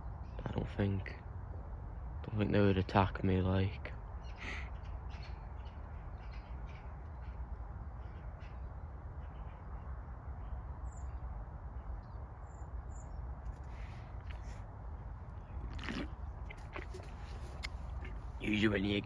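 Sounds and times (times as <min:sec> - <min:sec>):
crows cawing faintly: 0:13.5 - 0:18.8.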